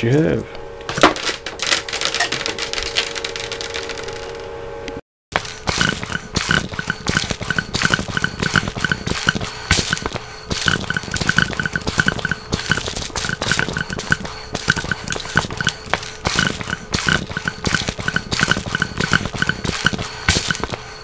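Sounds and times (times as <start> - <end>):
air pump puffs and clicks: 5.4 - 21.0.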